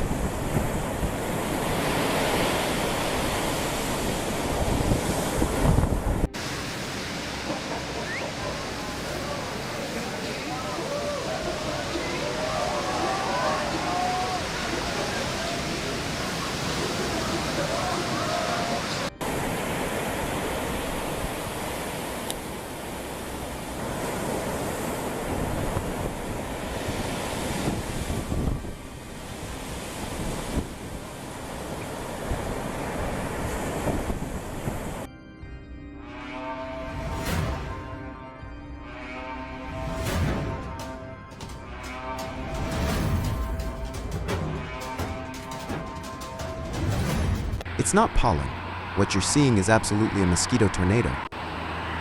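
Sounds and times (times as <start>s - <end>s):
wind buffeting microphone: 0.0s - 6.4s, 23.8s - 35.0s
steady water-like noise: 0.0s - 35.1s
surf rushing: 0.0s - 35.1s, 39.6s - 52.0s.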